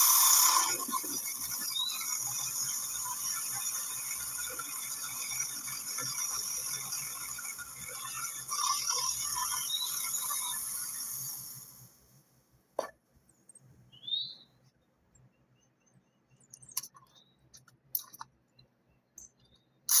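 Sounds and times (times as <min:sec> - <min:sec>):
battery chainsaw running: 0:00.0 - 0:11.7.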